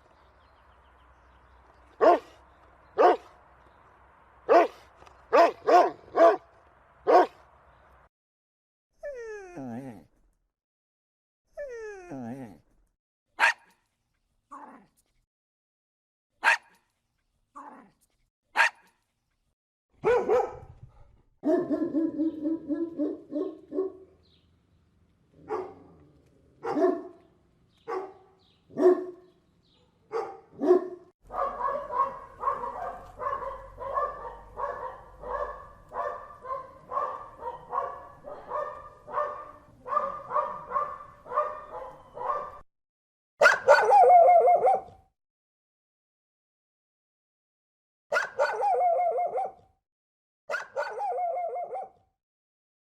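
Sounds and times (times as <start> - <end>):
dogs barking: 2.0 - 2.4, 3.0 - 3.4, 4.5 - 7.4, 13.4 - 13.7, 16.4 - 16.8, 18.6 - 18.8, 20.0 - 20.8, 21.4 - 24.2, 25.4 - 26.0, 26.6 - 42.6, 43.4 - 44.9, 48.1 - 49.6, 50.5 - 52.0.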